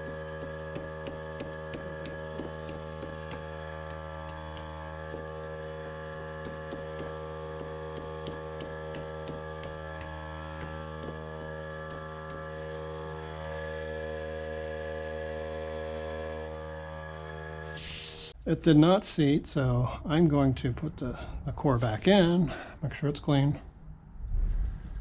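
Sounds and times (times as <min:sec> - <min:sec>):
air compressor motor humming: 0:00.0 - 0:18.4.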